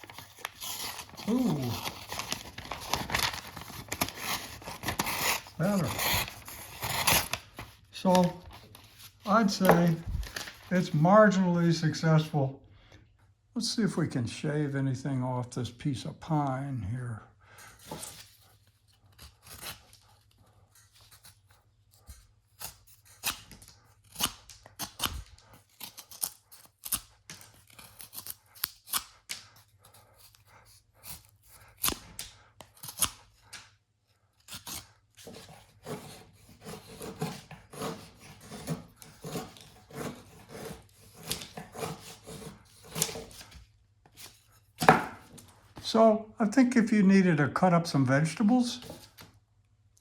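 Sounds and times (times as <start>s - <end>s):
knife scraping wood: 0.0s - 10.0s, 17.6s - 33.7s, 34.3s - 45.8s, 48.8s - 49.3s.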